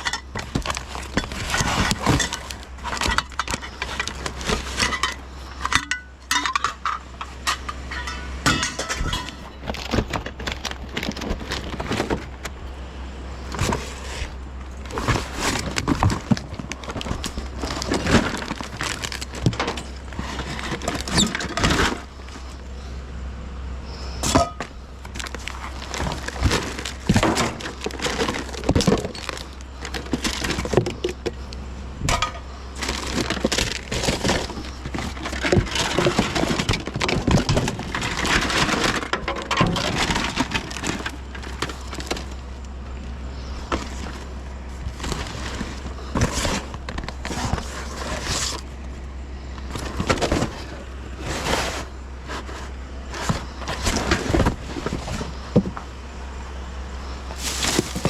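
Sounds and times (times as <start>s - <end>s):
junk clattering and rattling: 0.0s - 23.0s, 23.9s - 58.0s
steady low hum: 0.0s - 58.0s.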